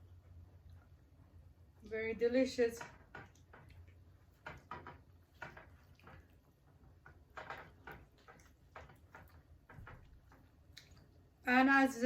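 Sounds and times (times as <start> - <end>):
low room hum: 0.0 - 12.0
chewing: 3.2 - 11.4.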